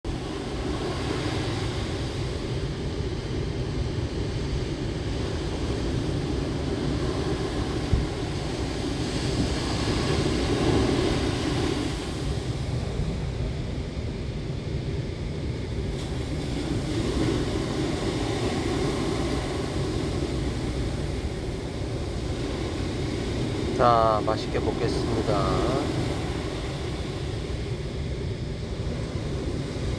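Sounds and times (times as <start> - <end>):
sea surf breaking: 15.9 - 27.6.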